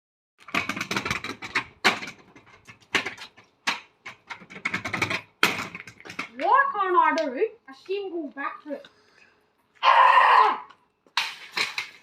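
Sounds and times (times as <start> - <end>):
clattering knocks and scrapes: 0.4 - 6.6.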